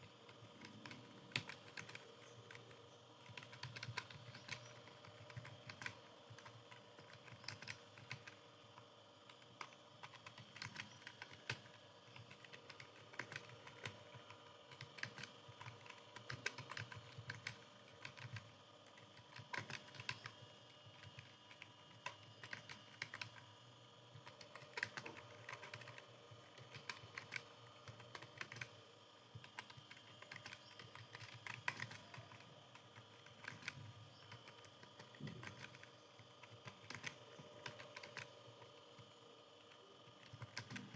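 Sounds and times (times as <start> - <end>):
typing on computer keyboard: 0.0 - 23.5, 24.1 - 40.9.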